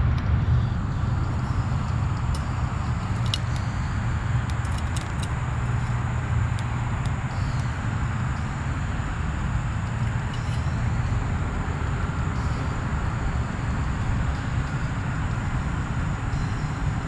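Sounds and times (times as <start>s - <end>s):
engine humming: 0.0s - 17.0s
light clicks and rattles: 1.8s - 3.7s, 4.4s - 7.8s.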